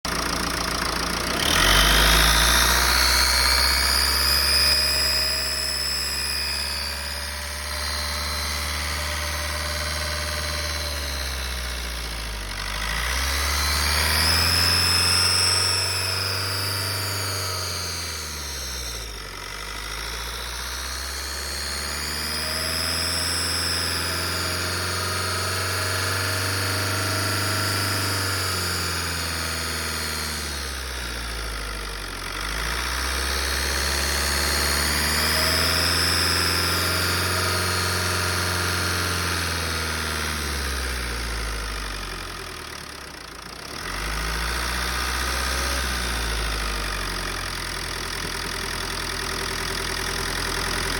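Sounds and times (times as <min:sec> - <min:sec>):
diesel engine revving: 0:00.1 - 0:50.9
high-pitched intake whine: 0:01.9 - 0:12.0, 0:13.6 - 0:19.3.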